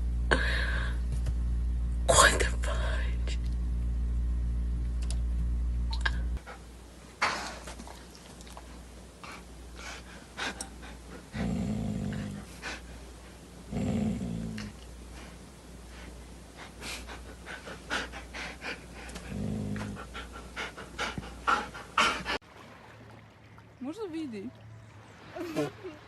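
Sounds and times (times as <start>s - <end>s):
dog panting and snuffling: 8.6s - 13.4s, 14.6s - 22.4s.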